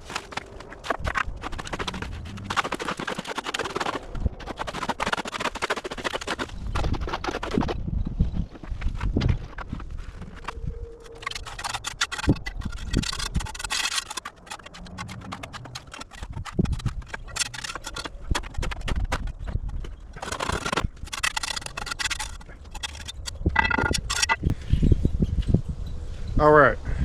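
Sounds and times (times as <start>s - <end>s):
hand tools scraping wet concrete: 11.1s - 23.4s.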